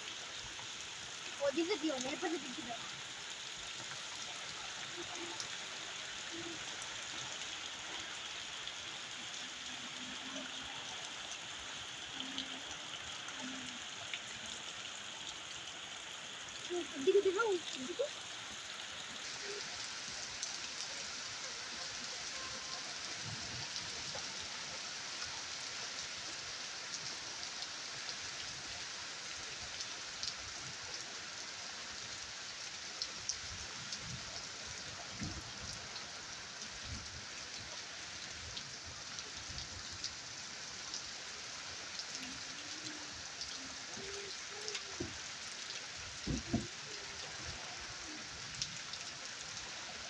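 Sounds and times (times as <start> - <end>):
rain hissing: 0.0 - 50.0
raindrops ticking: 1.4 - 3.6, 16.5 - 18.1, 46.2 - 47.0.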